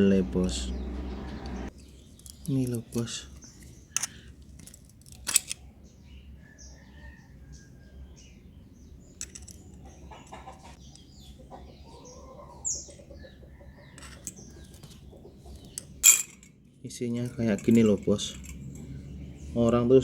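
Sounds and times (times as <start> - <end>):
small metal parts clicking and rattling: 2.0 - 5.6, 9.2 - 10.4, 14.0 - 15.0, 15.6 - 16.6, 17.2 - 18.9
faint animal calls: 9.9 - 15.6.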